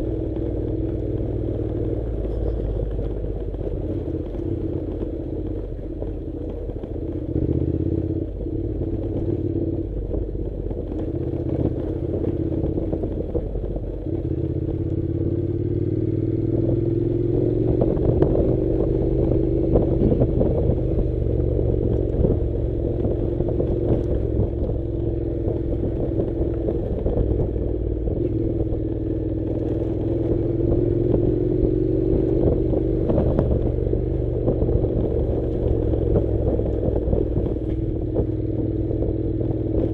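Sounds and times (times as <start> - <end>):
motorcycle engine running: 0.0 - 39.9
clatter and rattles: 0.4 - 8.2.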